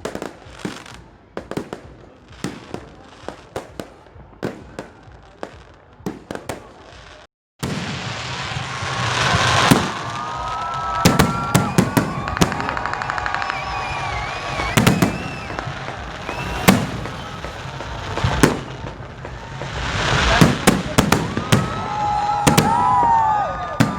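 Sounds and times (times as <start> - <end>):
fireworks bangs: 0.0 - 23.9
whistling fireworks: 0.0 - 23.9
firecrackers rattling: 8.1 - 23.9.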